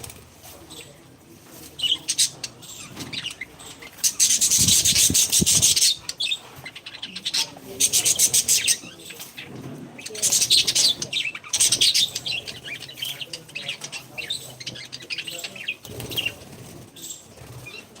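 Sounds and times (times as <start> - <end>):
parrots chirping: 1.8 - 18.0
wings fluttering: 4.1 - 6.0.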